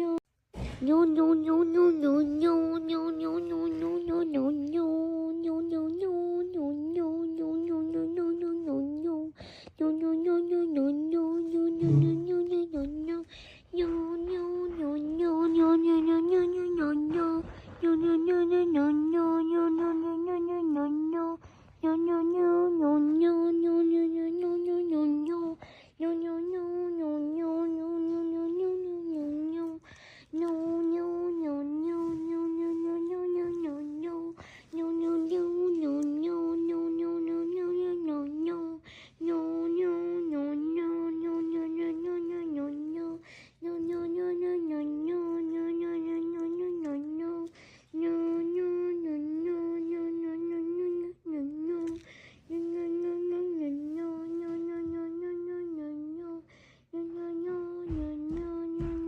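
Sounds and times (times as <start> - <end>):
person humming one note: 11.8 - 12.6.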